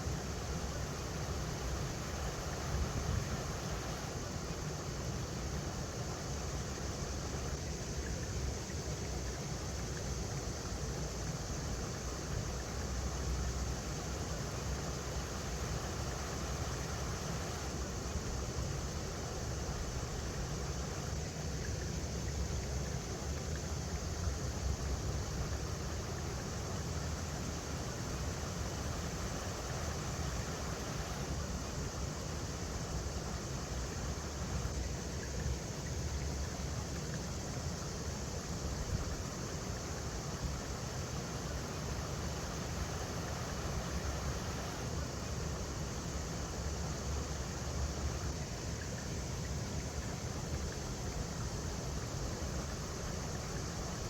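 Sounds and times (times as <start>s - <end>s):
river water rushing over rocks: 39.5s - 47.0s.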